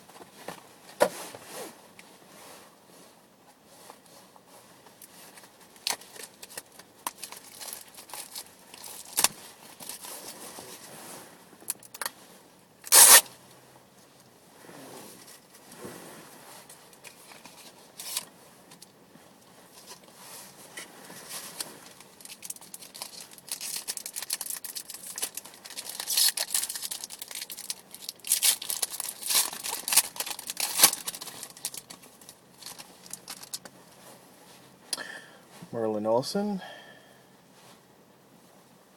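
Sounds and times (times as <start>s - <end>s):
cardboard packaging torn and crinkled: 5.8s - 10.4s, 12.8s - 13.3s, 17.2s - 18.3s, 21.4s - 33.7s.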